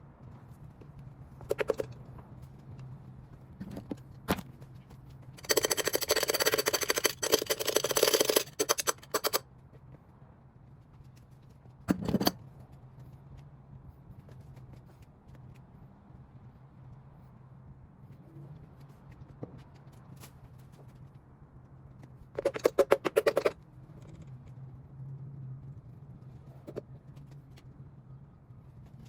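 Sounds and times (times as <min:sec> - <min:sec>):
hand tool clicks: 0:05.4 - 0:09.4.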